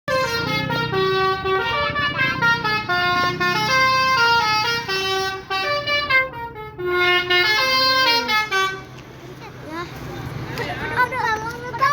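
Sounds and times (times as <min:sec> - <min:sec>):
bus horn playing a tune: 0:00.1 - 0:09.0.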